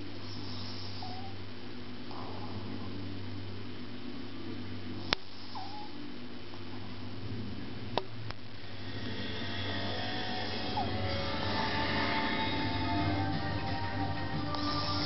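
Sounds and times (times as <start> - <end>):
steady low hum: 0.0 - 15.0
puppy snoring softly: 0.2 - 1.4, 5.0 - 6.0.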